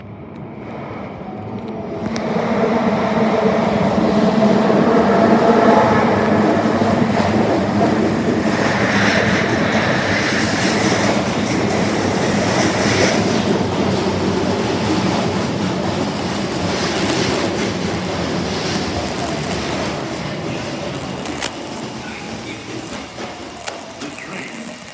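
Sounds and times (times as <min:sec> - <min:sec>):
subway train motor tones: 0:01.1 - 0:24.9
wheels clacking over rail joints: 0:07.0 - 0:24.9.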